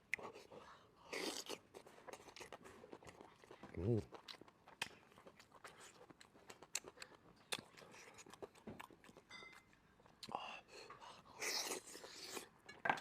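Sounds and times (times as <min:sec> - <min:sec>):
chewing and biting meat: 0:00.1 - 0:09.4.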